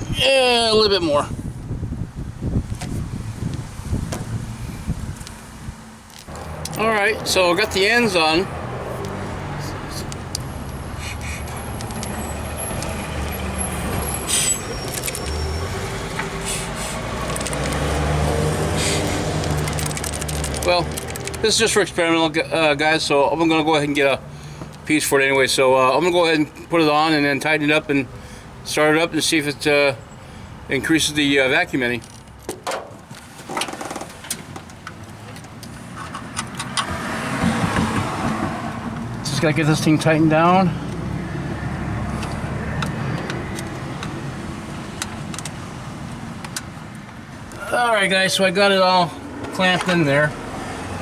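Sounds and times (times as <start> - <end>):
clicks and rustles of parts: 6.0 - 7.3, 9.0 - 15.5, 17.2 - 21.8, 32.0 - 36.9
short scraping rub: 10.7 - 19.8
sharp clicks and knocks: 17.2 - 18.2, 19.0 - 21.6.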